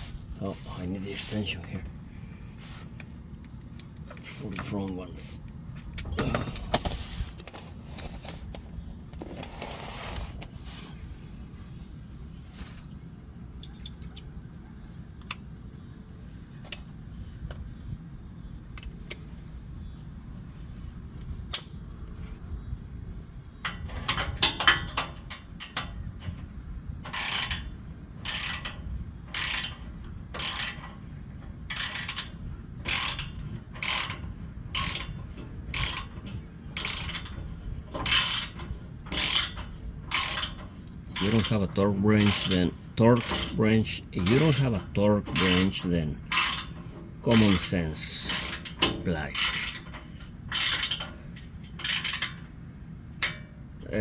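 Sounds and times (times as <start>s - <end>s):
steady low hum: 0.0s - 54.0s
ratchet clicking: 23.6s - 52.5s
metallic clatter: 23.7s - 53.6s.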